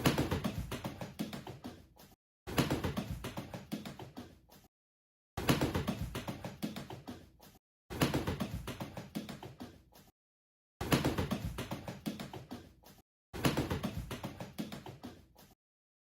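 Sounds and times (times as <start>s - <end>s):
duck feet slapping on tiles: 2.5s - 4.7s, 5.4s - 7.4s, 8.0s - 9.9s, 10.8s - 15.6s.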